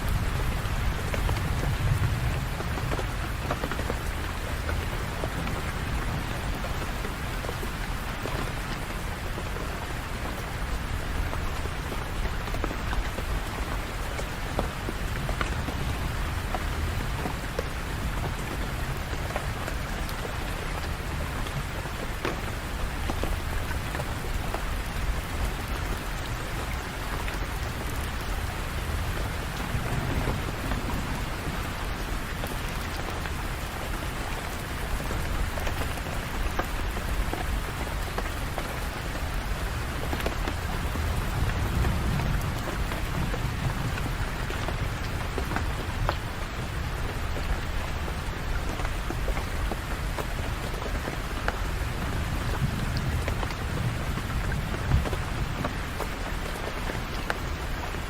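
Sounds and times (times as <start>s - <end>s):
heavy rain pattering: 0.0s - 58.0s
rain drop ticks: 0.1s - 58.0s
distant thunder rumbling: 28.5s - 33.2s.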